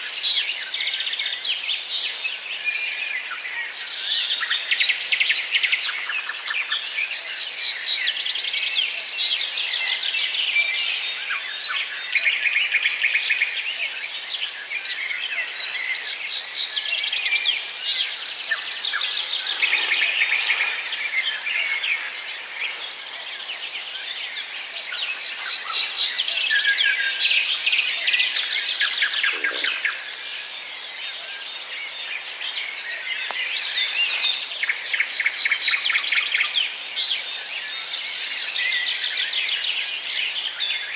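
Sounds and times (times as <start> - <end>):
flock of birds chirping: 9.0 - 40.9.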